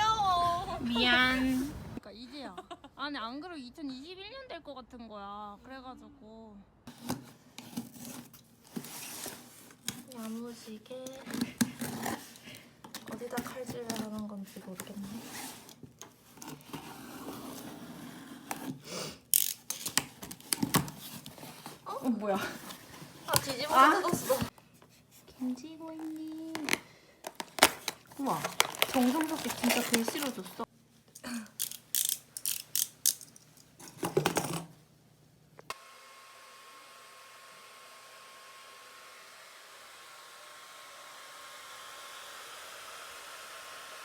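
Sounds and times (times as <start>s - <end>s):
knife scraping packaging: 6.9s - 10.4s, 11.2s - 12.5s, 27.4s - 30.5s
packaging rustling: 25.9s - 30.7s.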